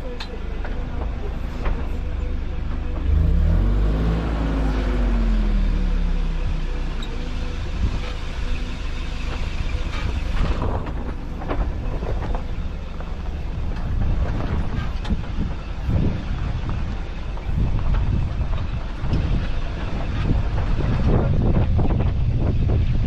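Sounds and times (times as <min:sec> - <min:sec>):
vehicle engine and tyre rumble: 0:00.0 - 0:23.0
vehicle body rattling and knocking: 0:09.4 - 0:23.0.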